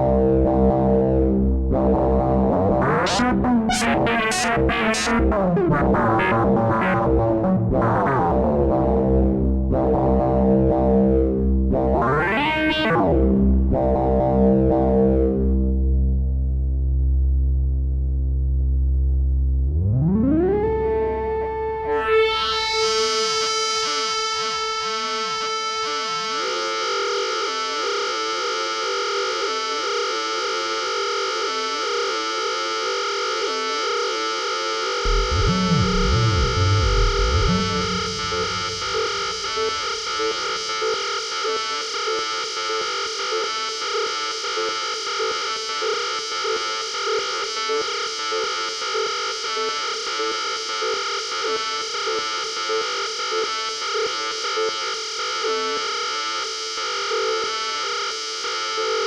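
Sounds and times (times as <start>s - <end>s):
distorted wobbling synthesizer tone: 1.7s - 13.4s, 35.0s - 41.2s
loud low sound: 2.5s - 9.8s, 35.1s - 40.6s.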